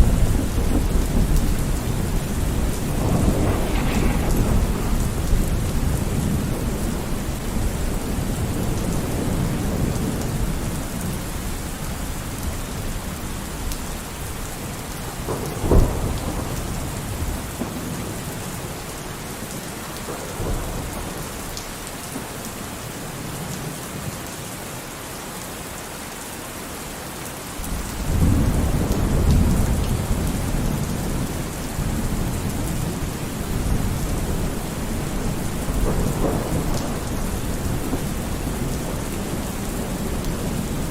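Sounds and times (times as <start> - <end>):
sharp thunderclap: 0.0 - 10.1, 31.8 - 40.8
rolling thunder: 0.0 - 11.5, 14.2 - 18.8, 27.7 - 40.9
steady rain: 0.0 - 40.9.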